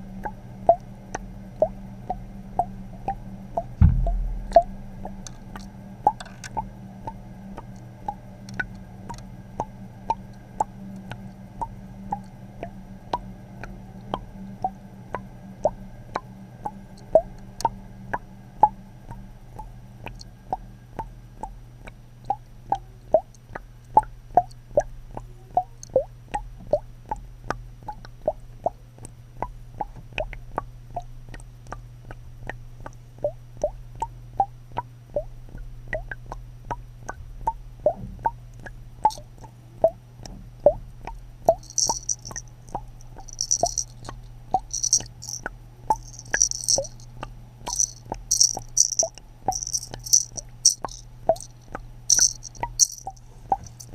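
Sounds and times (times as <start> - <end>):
steady low hum: 0.0 - 25.9, 41.3 - 53.9.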